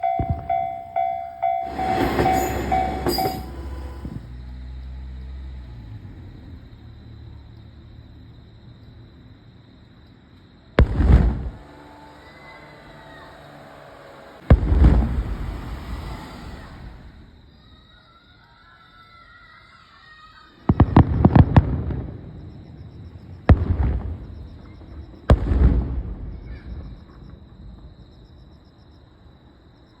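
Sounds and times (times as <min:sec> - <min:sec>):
level crossing bell dinging: 0:00.0 - 0:04.0
fireworks booming with echo: 0:00.0 - 0:04.3, 0:10.8 - 0:13.0, 0:13.6 - 0:17.3, 0:20.6 - 0:27.9
fireworks cracking: 0:00.0 - 0:04.3, 0:10.8 - 0:17.4, 0:20.6 - 0:22.3, 0:23.0 - 0:26.3
diesel railcar passing: 0:00.0 - 0:09.6, 0:11.5 - 0:17.7.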